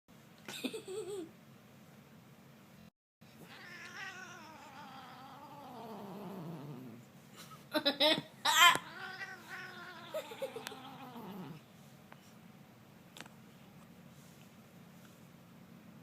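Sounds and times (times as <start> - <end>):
cat yowling: 3.4 - 6.8, 8.5 - 11.6.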